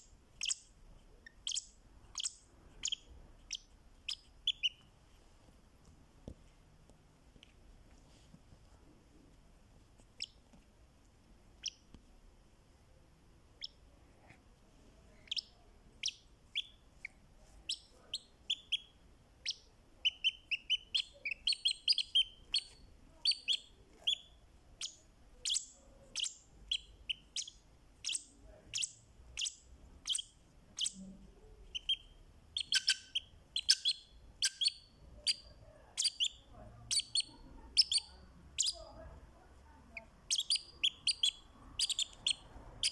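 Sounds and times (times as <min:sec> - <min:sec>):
lovebird chirping: 0:00.0 - 0:04.9, 0:10.2 - 0:10.4, 0:11.6 - 0:11.9, 0:13.6 - 0:13.8, 0:15.2 - 0:39.0, 0:39.9 - 0:42.9.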